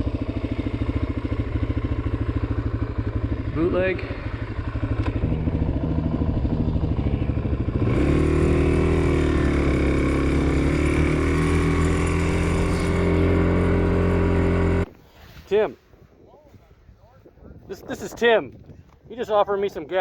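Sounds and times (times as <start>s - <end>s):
motorcycle engine running: 0.0s - 14.9s.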